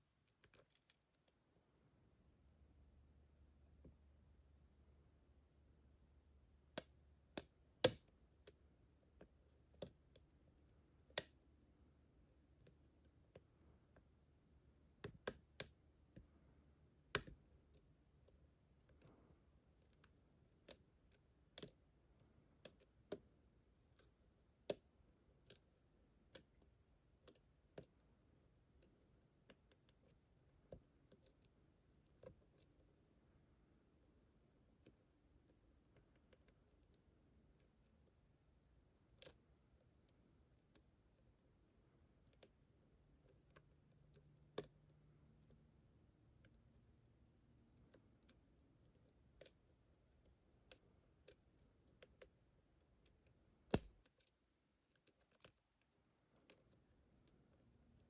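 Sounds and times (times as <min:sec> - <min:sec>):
lock picks clicking: 0:53.7 - 0:56.8.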